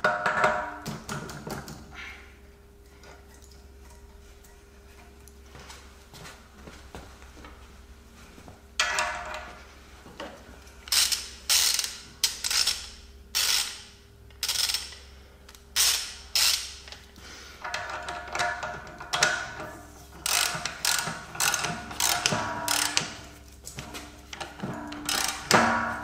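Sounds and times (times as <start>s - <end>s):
ratchet wrench clicking: 10.8s - 17.0s, 20.2s - 23.1s, 25.0s - 25.6s.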